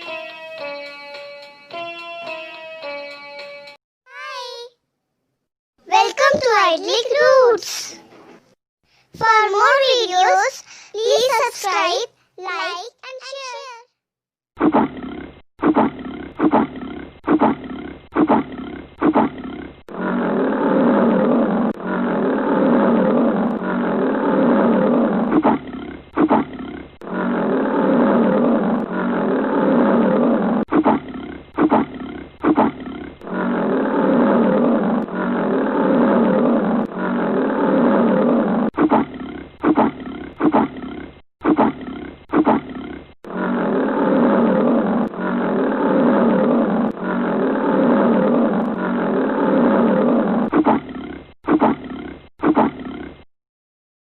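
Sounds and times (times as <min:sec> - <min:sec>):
lion roaring and grunting: 0:14.6 - 0:53.3.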